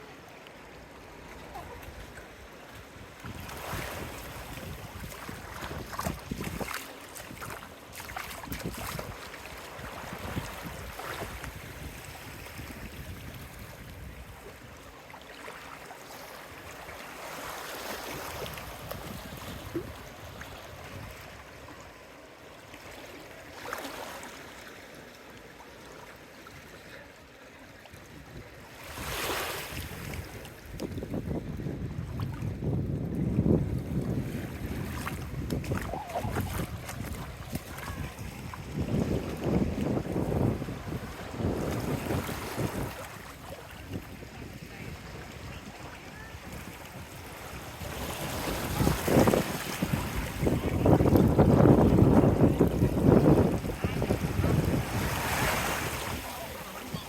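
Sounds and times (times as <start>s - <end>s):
small waves washing onto sand: 0.0s - 57.0s
wind buffeting microphone: 3.0s - 14.8s, 18.3s - 21.4s, 28.2s - 57.0s.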